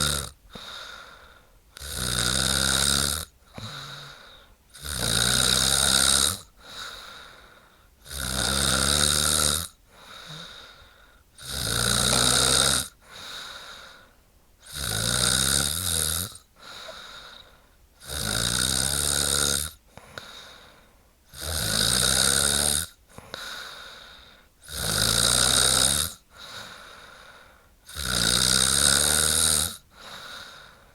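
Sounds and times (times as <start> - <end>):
woman snoring: 0.0 - 1.2, 1.8 - 7.2, 8.0 - 14.0, 14.6 - 17.4, 18.0 - 20.5, 21.3 - 27.2, 27.8 - 30.8
soft breathing: 0.5 - 1.7, 3.4 - 4.6, 6.5 - 8.0, 9.8 - 11.4, 12.1 - 14.4, 16.6 - 17.9, 19.9 - 21.2, 23.1 - 24.6, 26.3 - 27.8, 29.8 - 30.9.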